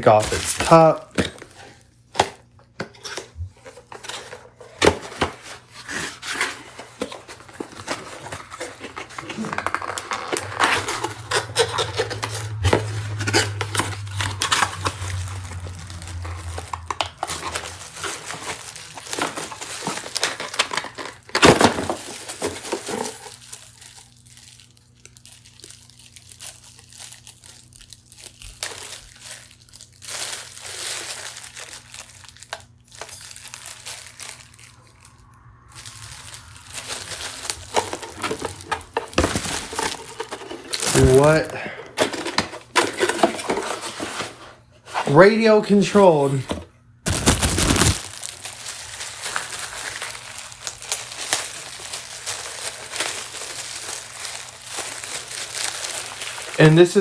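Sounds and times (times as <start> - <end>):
packaging crinkling and rustling: 0.0 - 57.0.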